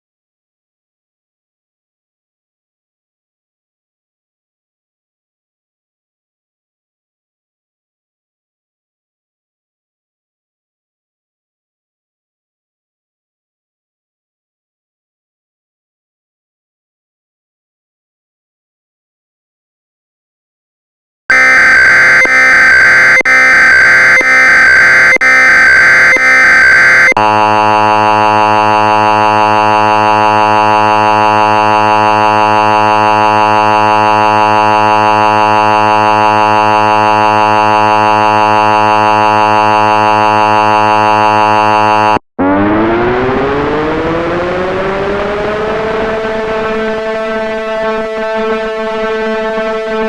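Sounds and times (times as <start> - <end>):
digital header data tones: 21.3 - 27.2
harsh attention tone: 21.3 - 42.7
siren winding up: 21.3 - 45.7.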